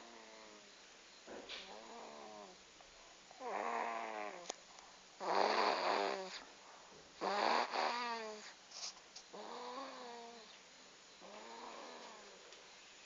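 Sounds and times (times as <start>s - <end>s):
baby snoring: 0.0s - 0.7s, 1.6s - 2.6s, 3.4s - 4.5s, 5.2s - 6.4s, 7.2s - 8.6s, 9.3s - 10.5s, 11.2s - 12.4s.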